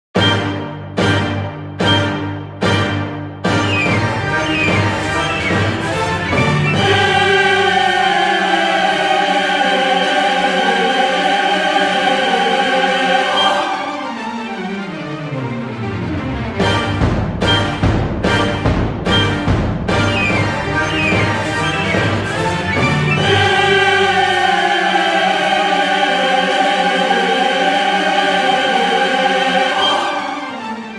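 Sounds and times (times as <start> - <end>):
choir holding a chord: 3.7 - 14.7, 20.2 - 30.9.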